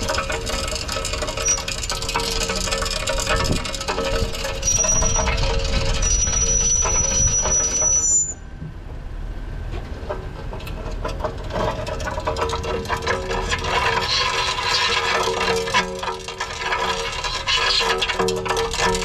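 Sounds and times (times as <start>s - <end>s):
brake scraping and clicking: 0.0s - 9.0s, 9.6s - 19.0s
thin high brake squeal: 1.3s - 1.8s, 4.4s - 8.6s.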